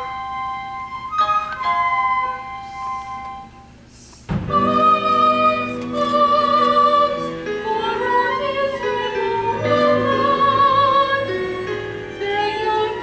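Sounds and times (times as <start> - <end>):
operatic stage musical music: 4.3 - 13.0.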